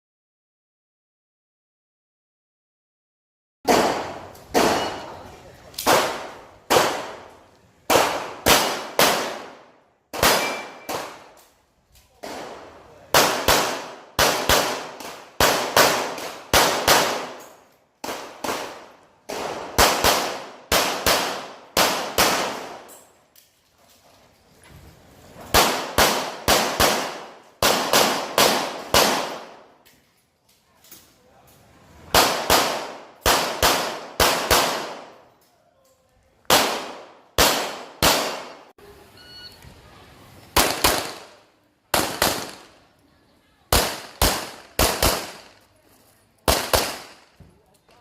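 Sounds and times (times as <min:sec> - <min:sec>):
pistol shots with ringing echo: 0:03.7 - 0:05.2, 0:05.8 - 0:07.3, 0:07.9 - 0:11.4, 0:12.2 - 0:22.9, 0:25.5 - 0:29.7, 0:32.1 - 0:35.2, 0:36.5 - 0:38.7, 0:40.6 - 0:42.8, 0:43.7 - 0:45.6, 0:46.5 - 0:47.3.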